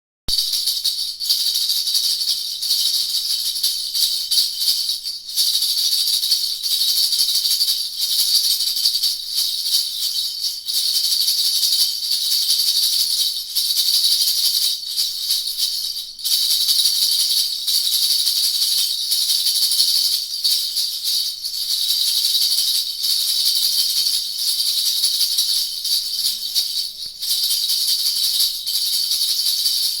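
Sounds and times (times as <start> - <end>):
jingle bell rattle shaken: 0.3 - 30.0.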